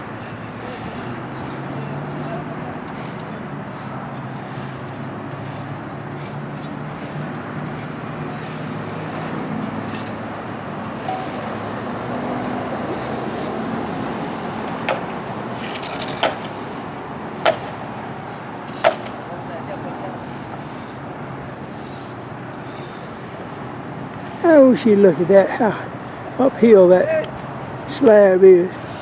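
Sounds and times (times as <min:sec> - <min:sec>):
traffic noise: 0:00.0 - 0:29.0
sharp knocks: 0:14.8 - 0:16.6, 0:17.4 - 0:17.8, 0:18.7 - 0:19.2.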